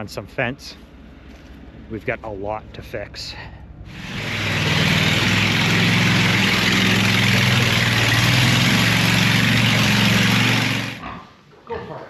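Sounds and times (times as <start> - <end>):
heavy engine running: 3.6 - 11.0
rushing noise: 3.8 - 11.0.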